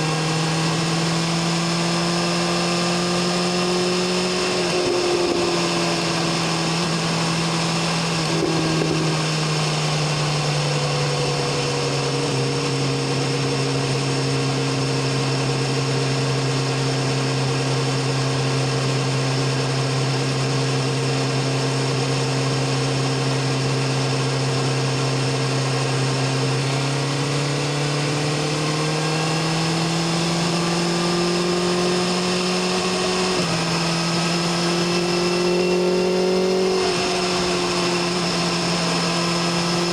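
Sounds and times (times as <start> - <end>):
wind and road noise: 0.0 - 17.2, 26.2 - 39.9
motorcycle engine and exhaust: 0.0 - 39.9.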